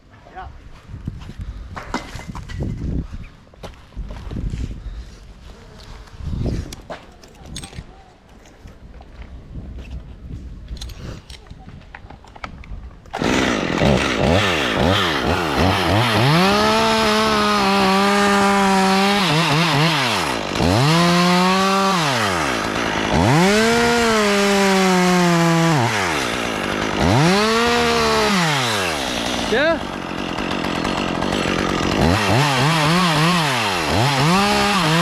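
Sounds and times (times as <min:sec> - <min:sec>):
chainsaw revving: 0:13.1 - 0:35.0.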